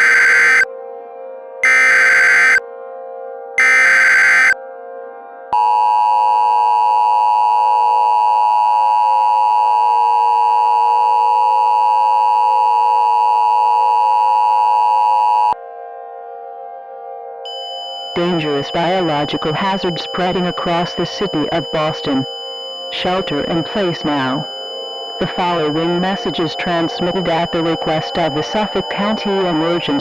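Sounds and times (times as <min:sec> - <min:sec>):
screeching digital data bursts: 0:00.0 - 0:00.7, 0:01.6 - 0:02.6, 0:03.6 - 0:04.6, 0:17.8 - 0:30.0
two-tone attention signal: 0:00.0 - 0:00.7, 0:01.6 - 0:02.6, 0:03.6 - 0:04.6, 0:05.6 - 0:15.6, 0:17.5 - 0:30.0
low steady drone: 0:15.6 - 0:30.0.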